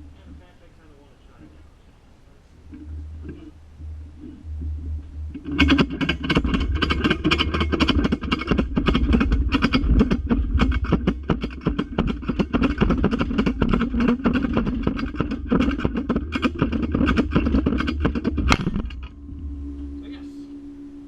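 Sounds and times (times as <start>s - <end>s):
low steady hum: 0.0s - 21.0s
ratchet strap clicking: 5.3s - 19.1s.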